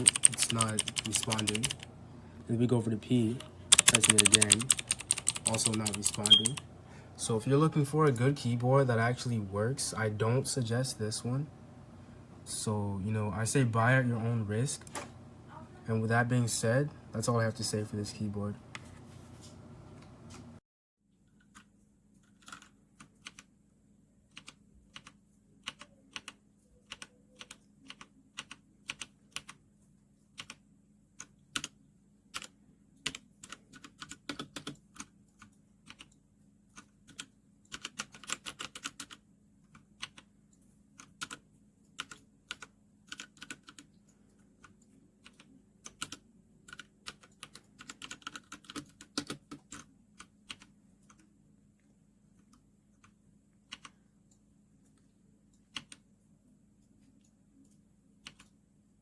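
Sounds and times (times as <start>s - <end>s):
mechanical keyboard typing: 0.0s - 1.9s, 3.7s - 6.6s, 21.4s - 23.5s, 24.3s - 29.6s, 30.4s - 30.6s, 31.2s - 40.3s, 41.0s - 43.9s, 44.6s - 51.3s, 53.0s - 54.0s, 55.7s - 56.0s, 58.2s - 58.5s.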